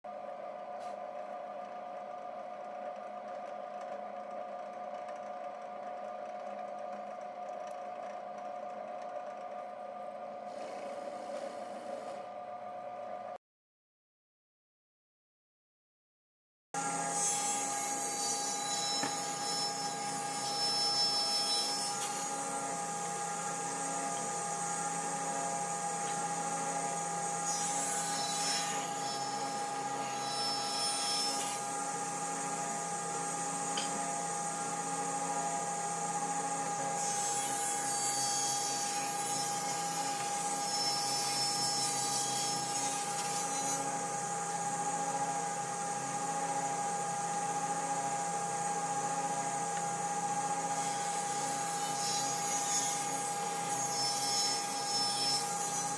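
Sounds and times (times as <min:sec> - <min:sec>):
power tool cutting wood: 0:16.8 - 0:55.9.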